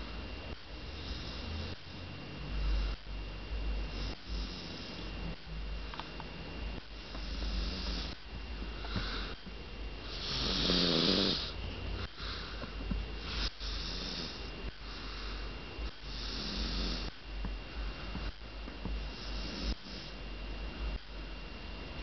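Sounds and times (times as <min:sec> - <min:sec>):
person snoring: 0:00.9 - 0:01.8, 0:03.9 - 0:05.1, 0:07.0 - 0:08.2, 0:10.0 - 0:17.1, 0:19.0 - 0:20.2.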